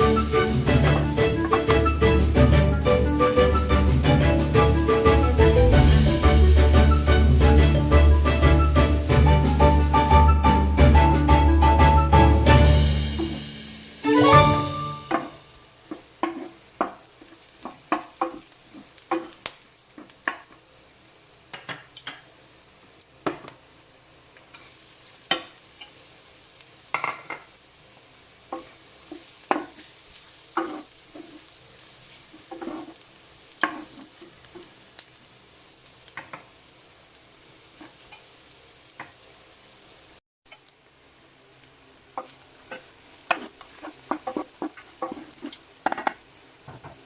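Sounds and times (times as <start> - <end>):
faint frying sizzle: 0.0 - 47.0
spatula scraping a pan: 16.2 - 16.6, 28.6 - 34.6, 42.2 - 46.2.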